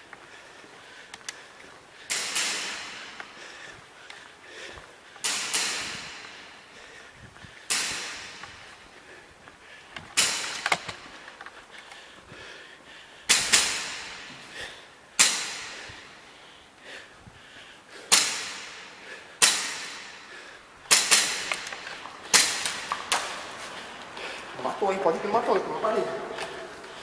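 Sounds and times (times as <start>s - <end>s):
airsoft gun shots: 2.1s - 3.2s, 5.2s - 6.5s, 7.7s - 8.6s, 10.2s - 11.0s, 13.3s - 14.3s, 15.2s - 16.0s, 18.1s - 20.2s, 20.9s - 23.4s.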